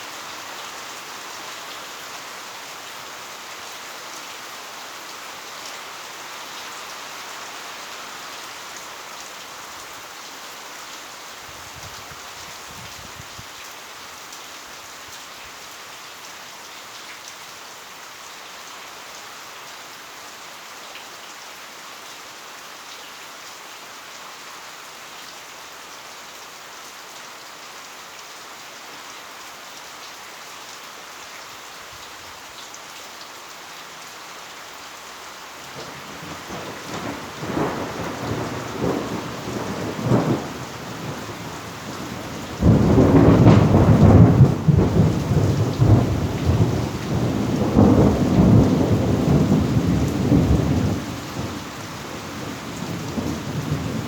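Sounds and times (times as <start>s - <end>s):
heavy rain: 0.0s - 54.0s
thunder rumbling: 35.8s - 51.6s
loud thunderclap: 36.2s - 41.4s, 42.0s - 51.5s.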